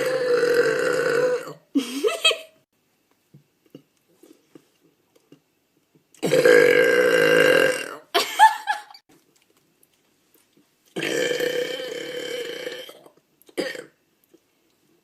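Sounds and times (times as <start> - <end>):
woman burping: 0.0 - 1.9, 6.2 - 8.1, 11.0 - 14.0.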